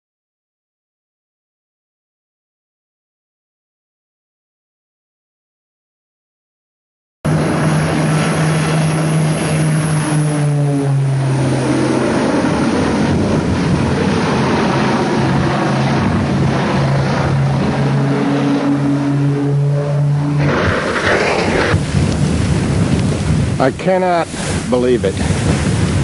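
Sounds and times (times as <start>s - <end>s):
propeller aircraft engine drone: 7.3s - 26.0s
rushing noise: 7.3s - 26.0s.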